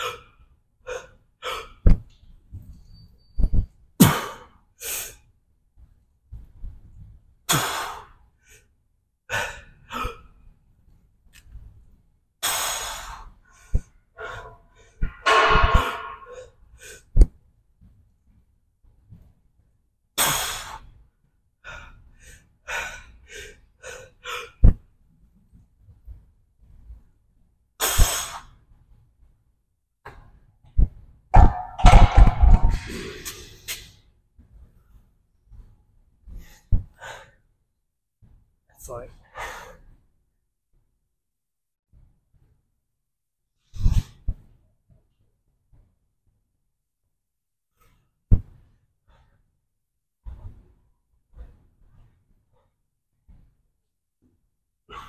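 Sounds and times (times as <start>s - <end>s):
gym weights thudding: 14.2s - 16.4s, 31.4s - 33.5s
man breathing hard: 21.6s - 24.6s.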